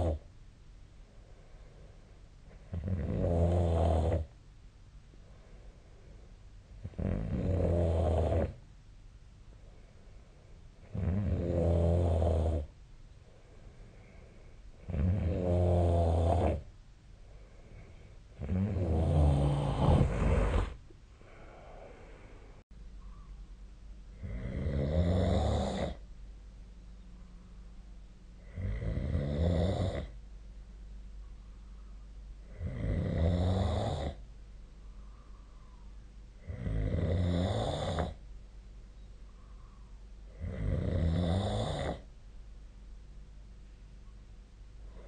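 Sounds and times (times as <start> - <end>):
person snoring: 0.0 - 0.2, 2.7 - 4.3, 6.9 - 8.6, 10.9 - 12.7, 14.9 - 16.7, 18.4 - 22.2, 24.2 - 26.0, 28.4 - 30.2, 32.4 - 34.2, 36.4 - 38.2, 40.3 - 42.1
faint steady low hum: 0.0 - 45.0.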